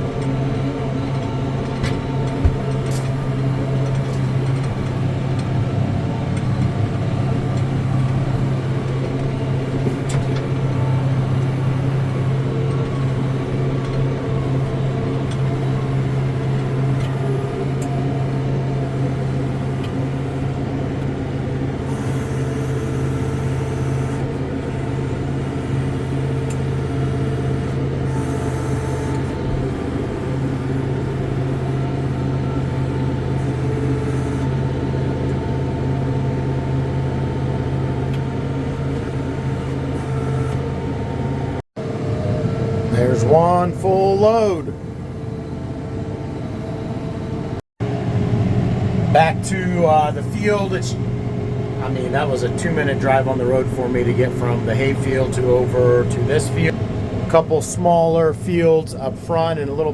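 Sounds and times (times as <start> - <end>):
vehicle engine running: 0.0 - 59.9.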